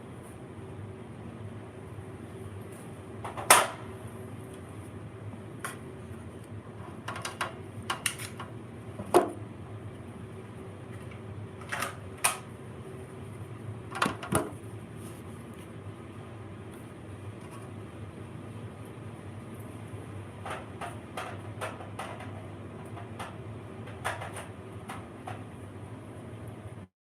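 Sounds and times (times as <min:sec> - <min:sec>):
low electrical hum: 0:00.0 - 0:26.9
sharp clicks and knocks: 0:20.4 - 0:25.5.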